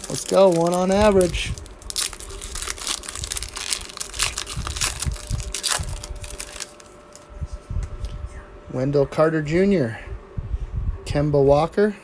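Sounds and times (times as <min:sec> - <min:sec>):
wrapper crinkling and tearing: 0:00.0 - 0:07.3.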